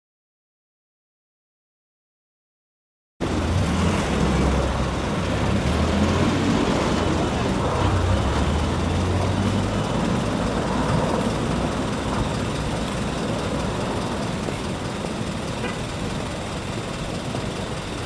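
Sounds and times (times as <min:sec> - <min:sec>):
military aircraft roar: 0:03.2 - 0:18.0
road traffic: 0:03.2 - 0:18.0.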